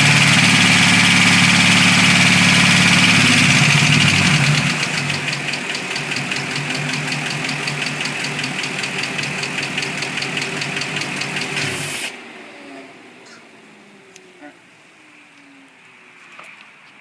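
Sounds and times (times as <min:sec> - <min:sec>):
rhythmic engine ticking: 0:00.0 - 0:12.1
car engine idling: 0:00.0 - 0:16.9.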